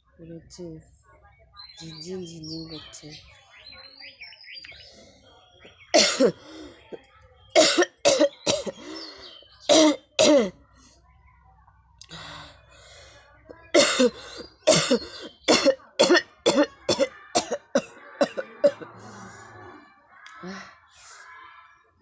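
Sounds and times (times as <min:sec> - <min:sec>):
person coughing: 0:06.0 - 0:06.4, 0:07.6 - 0:08.8, 0:13.8 - 0:18.9.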